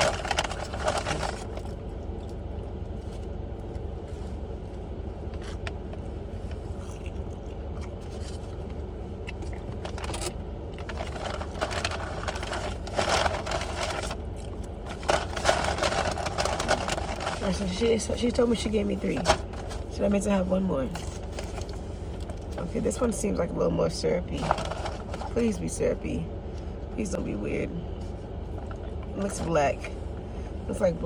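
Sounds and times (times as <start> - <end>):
rustling and scraping: 0.0 - 20.1, 20.8 - 23.0, 24.3 - 25.5
car engine running: 0.0 - 31.0.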